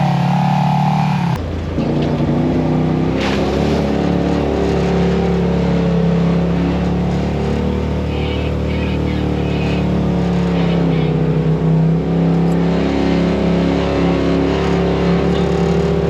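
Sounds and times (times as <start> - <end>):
engine running under throttle: 0.0 - 16.0.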